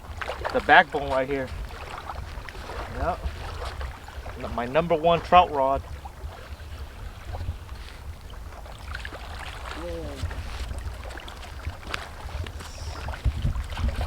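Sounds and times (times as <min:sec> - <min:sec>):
wind rumbling on microphone: 0:00.0 - 0:14.0
short voice sound: 0:09.8 - 0:10.4.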